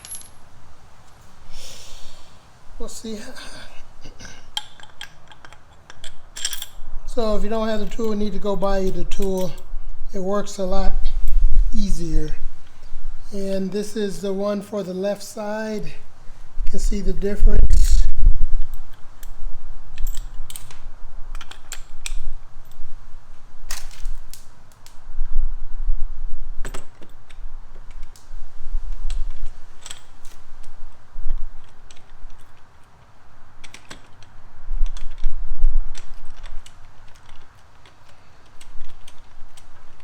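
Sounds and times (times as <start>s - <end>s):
hand tools clicking and tapping: 4.2s - 6.7s, 35.9s - 40.0s.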